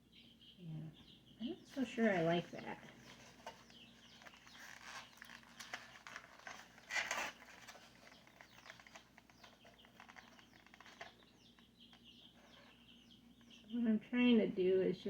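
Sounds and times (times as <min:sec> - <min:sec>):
hands rustling potting soil: 0:01.7 - 0:11.4.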